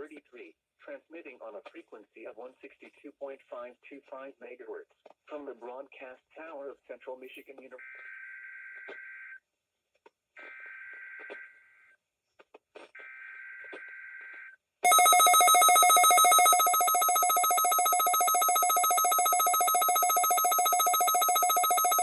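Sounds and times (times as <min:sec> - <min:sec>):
pulsing electronic warning alarm: 0:14.9 - 0:22.0.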